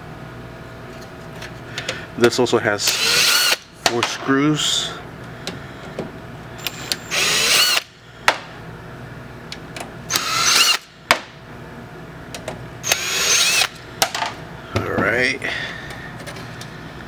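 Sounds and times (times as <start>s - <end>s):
drill-driver whining: 2.8s - 3.7s, 6.6s - 7.9s, 10.1s - 10.9s, 12.8s - 13.8s.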